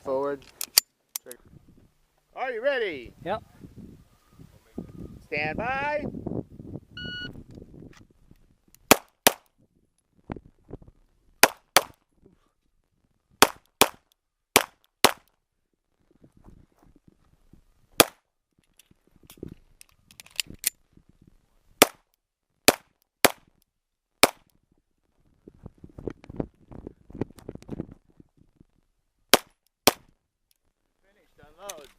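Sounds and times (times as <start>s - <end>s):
shot timer beep: 7.0s - 7.4s
pistol shots: 8.9s - 9.5s, 18.0s - 18.2s.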